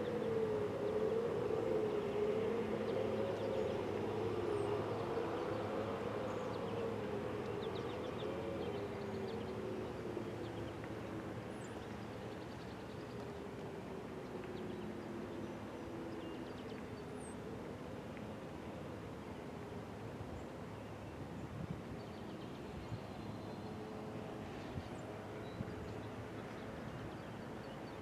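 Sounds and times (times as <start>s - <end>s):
wavering warning siren: 0.0s - 11.3s.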